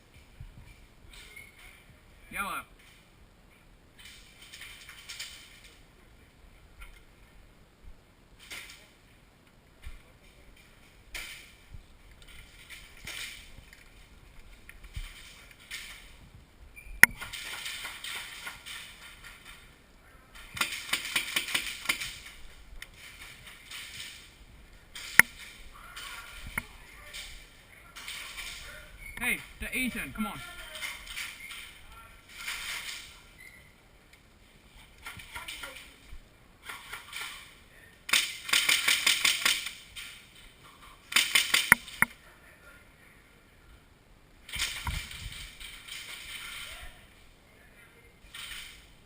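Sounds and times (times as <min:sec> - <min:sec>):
airsoft guns firing: 0:20.5 - 0:22.4, 0:38.1 - 0:39.8, 0:41.1 - 0:42.0.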